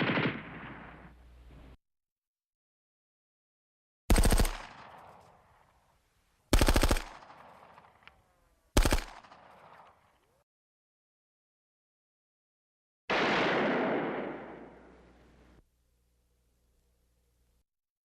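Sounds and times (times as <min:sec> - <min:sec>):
machine-gun fire: 0:00.0 - 0:01.0, 0:04.1 - 0:05.0, 0:06.5 - 0:07.8, 0:08.8 - 0:09.8, 0:13.1 - 0:15.0.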